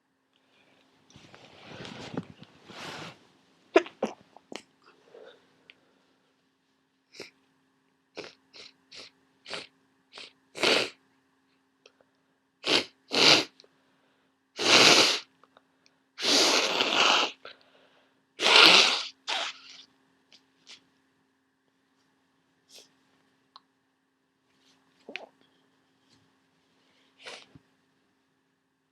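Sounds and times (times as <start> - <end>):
person sneezing: 18.4 - 19.8.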